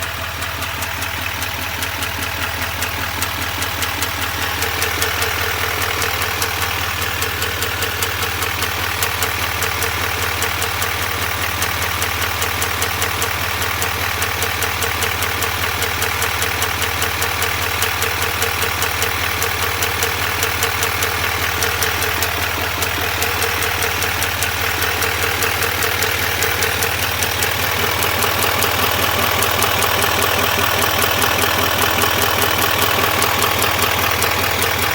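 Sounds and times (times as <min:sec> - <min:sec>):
diesel engine idling: 0:00.0 - 0:34.9
fast even ticking: 0:11.6 - 0:34.9.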